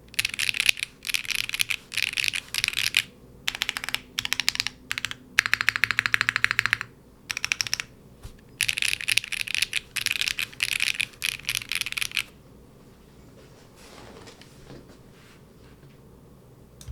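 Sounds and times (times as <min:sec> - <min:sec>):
fast typing on mechanical keyboard: 0:00.1 - 0:07.9, 0:08.6 - 0:12.3.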